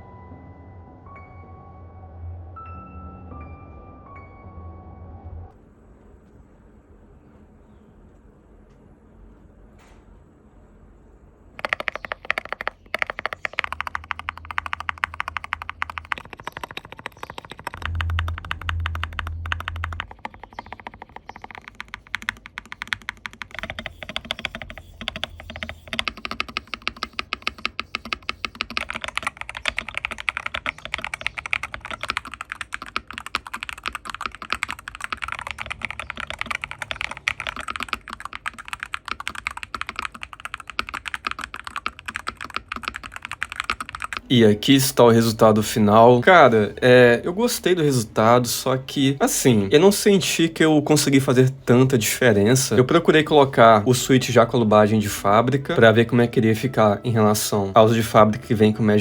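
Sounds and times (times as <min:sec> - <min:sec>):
fast keyboard typing: 0:11.6 - 0:46.7, 0:47.4 - 0:59.0.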